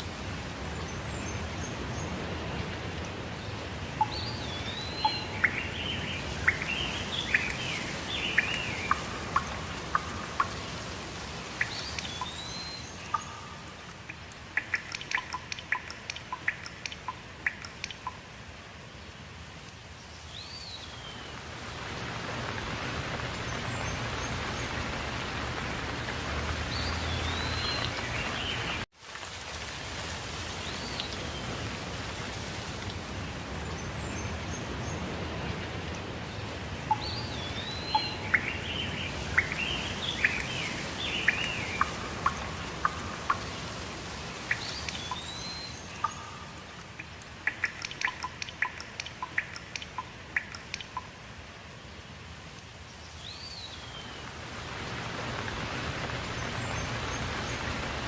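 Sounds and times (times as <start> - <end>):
steady rain: 0.0 - 58.0
sharp water drops landing: 4.0 - 18.4, 21.7 - 28.9, 36.8 - 51.3.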